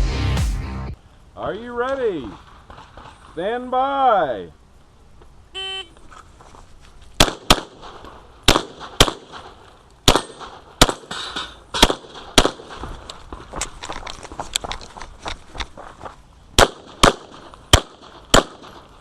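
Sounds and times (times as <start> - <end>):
pistol shots: 7.2 - 12.9, 16.6 - 18.9.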